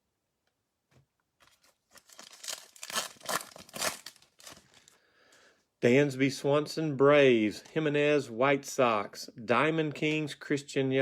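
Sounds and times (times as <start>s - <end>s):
foil wrapper tearing and crinkling: 1.5s - 5.0s.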